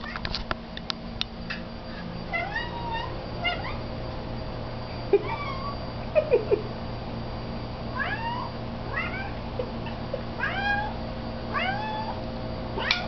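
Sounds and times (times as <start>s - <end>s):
cat meowing: 2.4s - 3.8s, 10.4s - 12.2s.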